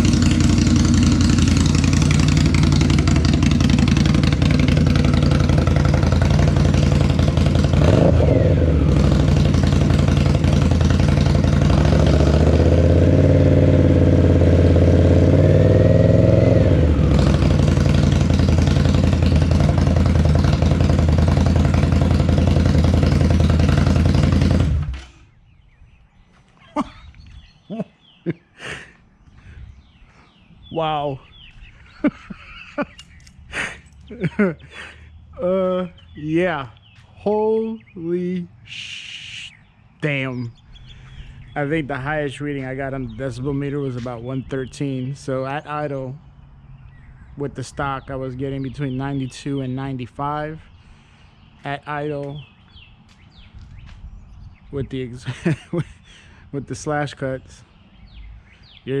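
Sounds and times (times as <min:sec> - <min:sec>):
motorcycle engine idling: 0:00.0 - 0:15.3, 0:16.9 - 0:25.0
engine shutting off: 0:00.0 - 0:25.4.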